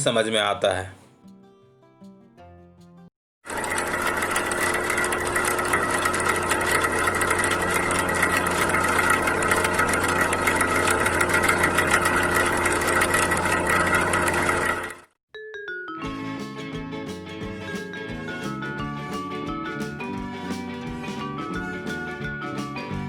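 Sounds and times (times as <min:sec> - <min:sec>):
exhaust fan humming and rattling: 0:03.5 - 0:15.1.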